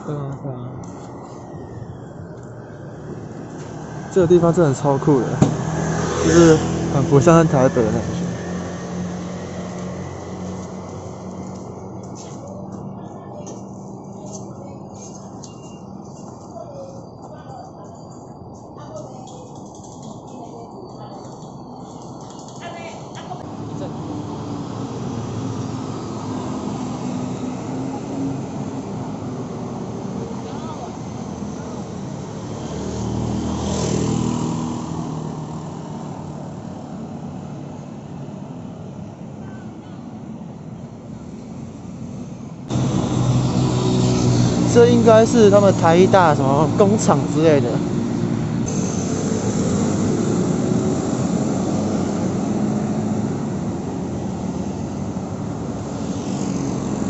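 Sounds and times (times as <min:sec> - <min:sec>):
steady traffic noise: 0:00.0 - 0:57.0
vehicle passing close by: 0:02.7 - 0:11.9, 0:23.4 - 0:37.5, 0:42.7 - 0:57.0
vehicle engine rumble: 0:42.4 - 0:57.0.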